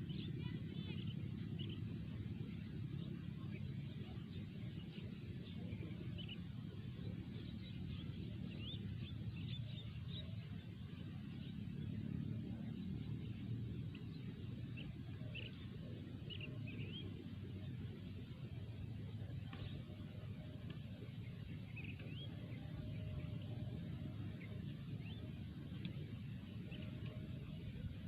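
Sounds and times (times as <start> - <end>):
small birds chirping: 0.0 - 28.0
steady low rumble: 0.0 - 28.0.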